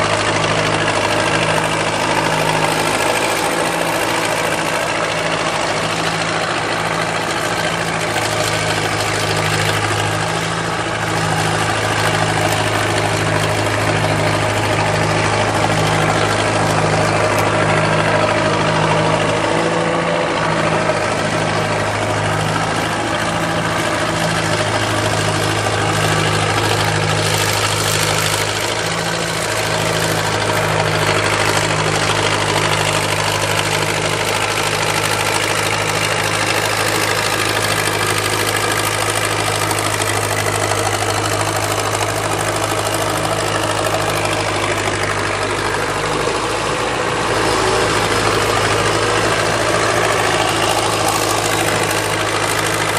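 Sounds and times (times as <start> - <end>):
backhoe engine running: 0.0 - 52.9.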